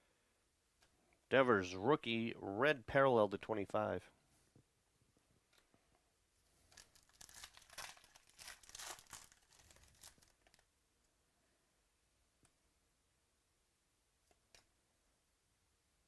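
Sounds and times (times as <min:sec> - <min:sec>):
wrapper crinkling and tearing: 0:06.7 - 0:10.6.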